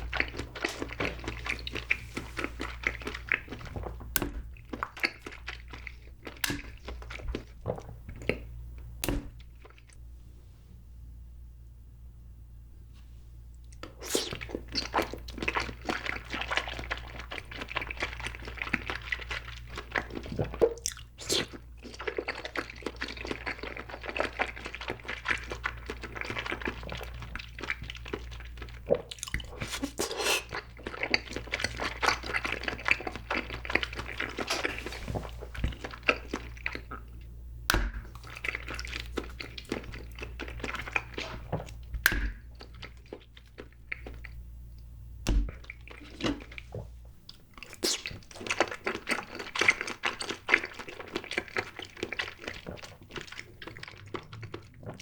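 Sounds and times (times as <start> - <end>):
mouth chewing wet squelches: 0.0 - 10.0, 13.5 - 55.0.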